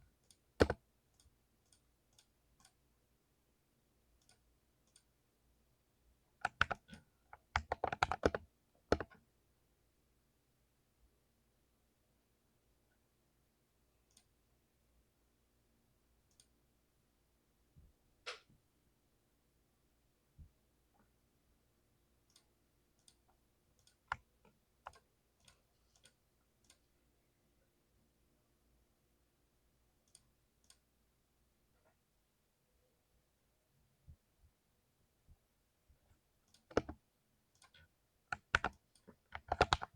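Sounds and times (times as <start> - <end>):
mechanical keyboard typing: 0.6 - 0.8, 6.4 - 9.1, 36.6 - 37.0, 37.6 - 39.9.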